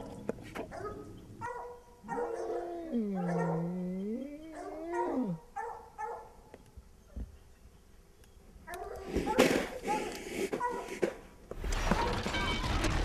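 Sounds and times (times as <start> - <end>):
bear whining: 2.2 - 5.5
bear moaning: 2.4 - 5.4.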